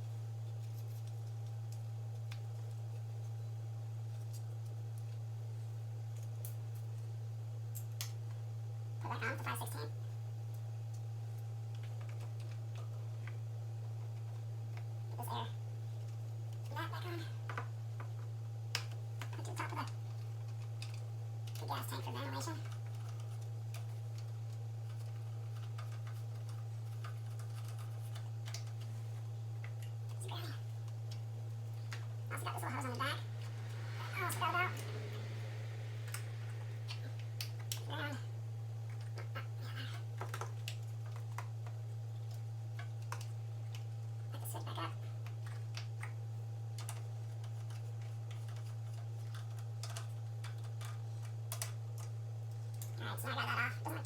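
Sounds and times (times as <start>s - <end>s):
steady low hum: 0.0s - 54.0s
small engine parts clicking: 45.2s - 53.0s.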